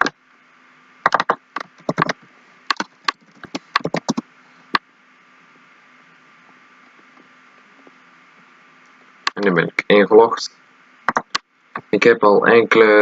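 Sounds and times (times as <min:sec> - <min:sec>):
computer keyboard typing: 0:01.1 - 0:04.2, 0:11.1 - 0:11.4.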